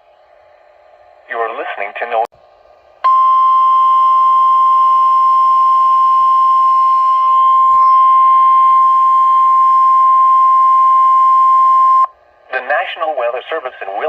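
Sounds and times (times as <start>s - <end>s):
high steady alarm tone: 3.0s - 12.2s
faint radio hiss: 12.5s - 14.0s.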